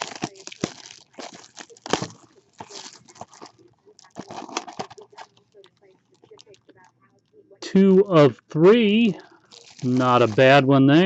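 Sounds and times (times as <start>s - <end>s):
cardboard rustling: 0.0s - 6.5s, 9.2s - 10.8s
plastic shrink-wrap crinkling and tearing: 0.0s - 6.9s, 9.2s - 10.6s.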